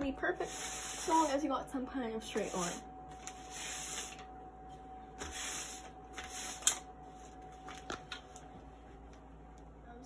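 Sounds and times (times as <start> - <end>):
marker scraping plastic sack: 0.4 - 1.4.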